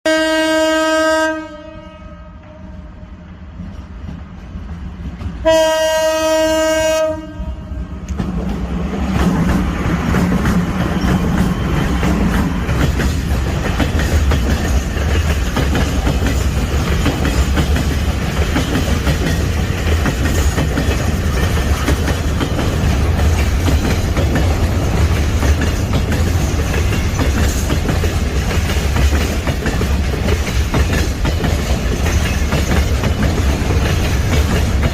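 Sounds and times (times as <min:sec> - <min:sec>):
locomotive horn blast: 0:00.0 - 0:03.0, 0:05.4 - 0:08.0
freight train rumbling past: 0:00.1 - 0:34.9
train wheels clacking on rails: 0:03.5 - 0:07.3, 0:08.0 - 0:34.9.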